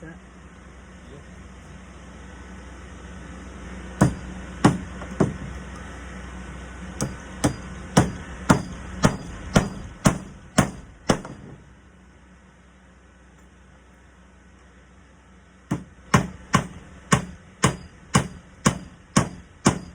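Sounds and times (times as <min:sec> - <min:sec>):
hammer striking nails into wood: 0:04.0 - 0:05.5, 0:07.0 - 0:11.6, 0:15.7 - 0:19.9.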